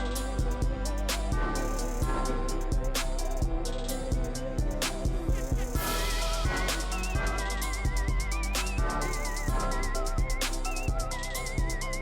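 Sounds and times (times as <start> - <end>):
fast hi-hats: 0.0 - 12.0
kick drum: 0.0 - 12.0
wavering high melody: 0.0 - 12.0.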